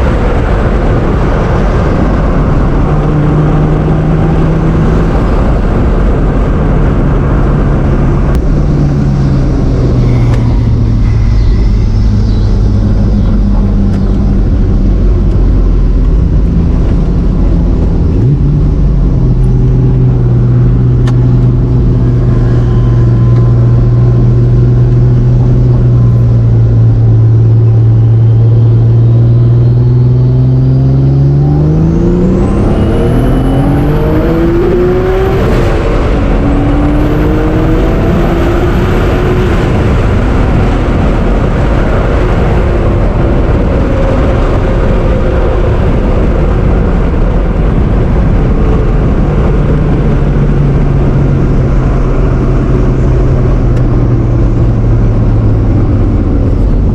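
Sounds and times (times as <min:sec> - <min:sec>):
broad rushing noise: 0:00.0 - 0:28.8
car engine accelerating: 0:00.0 - 0:56.9
turbo whistle: 0:10.0 - 0:14.2.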